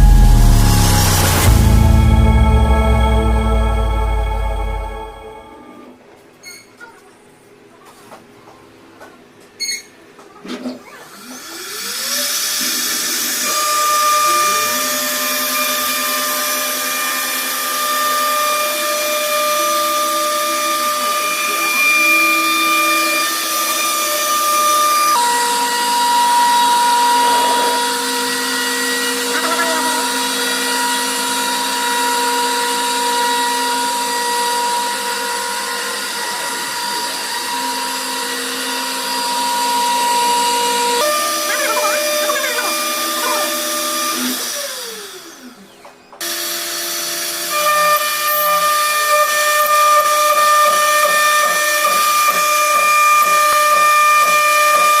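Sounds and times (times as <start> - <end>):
router spindle whining: 11.1 - 55.0.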